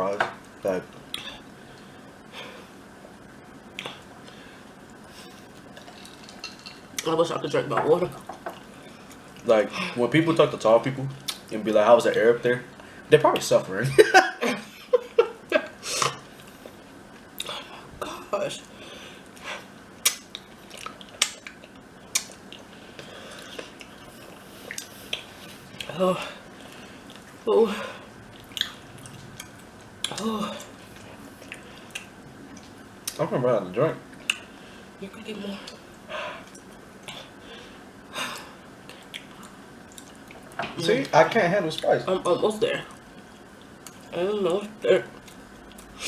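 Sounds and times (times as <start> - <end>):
chewing: 5.4 - 7.1, 20.0 - 27.4, 28.3 - 33.2, 38.8 - 40.6
sharp cracks: 20.0 - 20.4
clicks and smacks of chewing: 20.0 - 24.0, 38.8 - 40.6.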